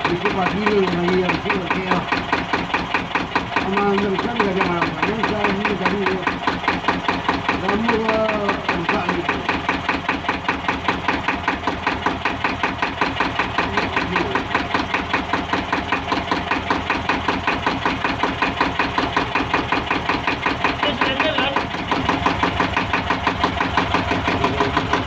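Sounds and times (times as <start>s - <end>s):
diesel engine knocking: 0.0s - 25.0s.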